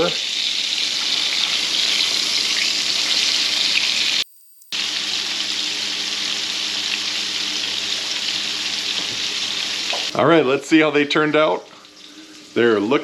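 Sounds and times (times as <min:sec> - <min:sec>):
fish fillets sizzling in oil: 0:00.0 - 0:10.1.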